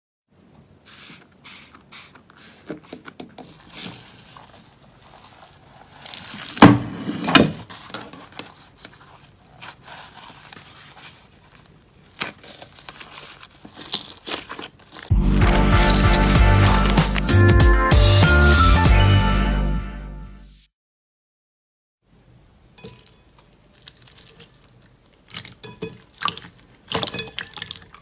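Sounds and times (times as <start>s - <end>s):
slime clicking and crackling: 9.5s - 17.3s, 23.0s - 28.0s.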